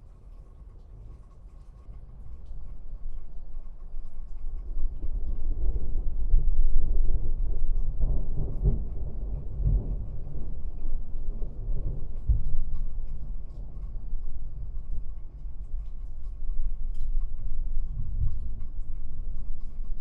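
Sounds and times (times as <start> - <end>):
raindrops ticking: 0.0 - 20.0
rolling thunder: 4.8 - 20.0.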